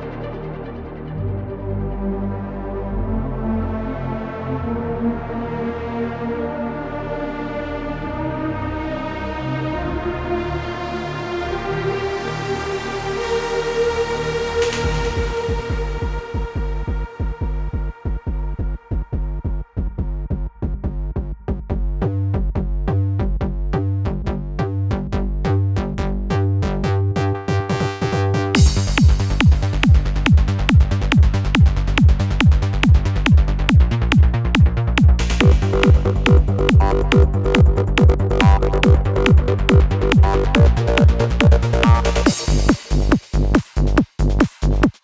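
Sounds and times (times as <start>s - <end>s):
synthesizer bass pattern: 14.2s - 44.9s
driving drum beat: 27.8s - 45.0s.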